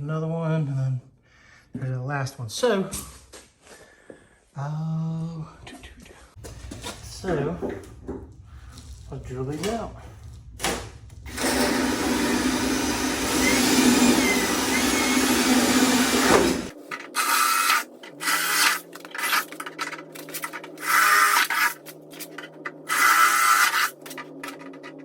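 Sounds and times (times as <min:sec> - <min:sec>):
power drill drilling: 0:11.3 - 0:19.5, 0:20.8 - 0:21.8, 0:22.8 - 0:24.1.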